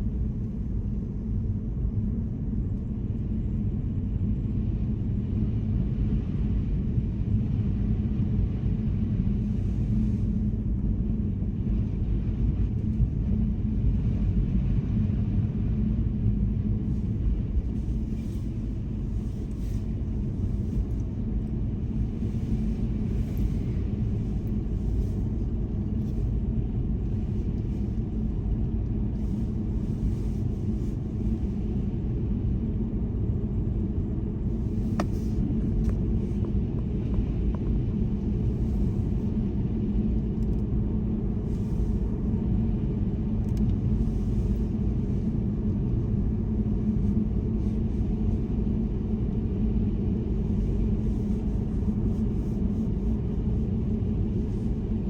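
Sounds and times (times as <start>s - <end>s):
car road and engine rumble: 34.5s - 39.3s.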